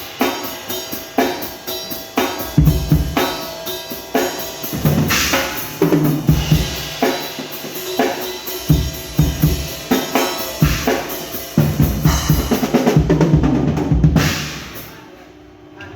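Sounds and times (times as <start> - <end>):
bass drum and snare beat: 4.2 - 14.8.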